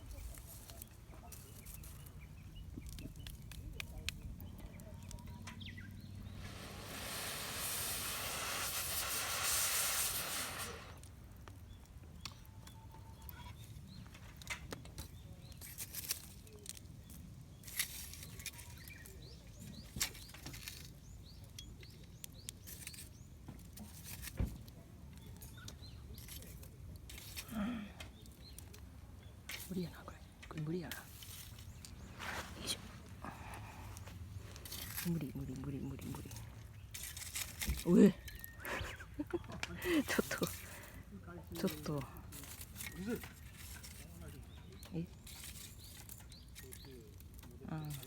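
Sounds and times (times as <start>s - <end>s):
campfire crackling and popping: 0.0s - 48.0s
rushing hiss: 6.2s - 11.1s.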